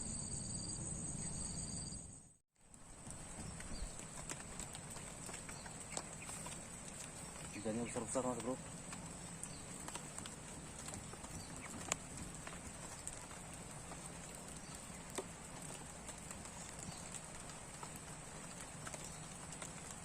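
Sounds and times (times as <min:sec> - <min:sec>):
steady outdoor hiss: 0:00.0 - 0:20.0
raindrops ticking: 0:02.6 - 0:20.0.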